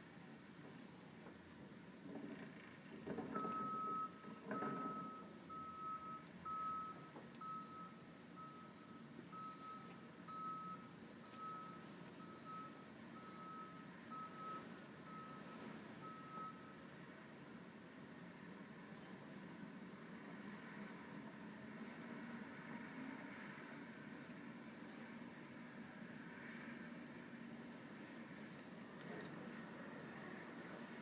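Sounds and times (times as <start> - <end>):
truck backup alarm beeping: 3.3 - 16.9.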